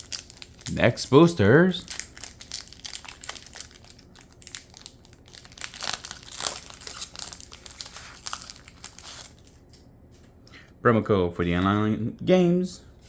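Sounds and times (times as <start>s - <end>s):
foil wrapper crinkling: 0.0s - 9.8s.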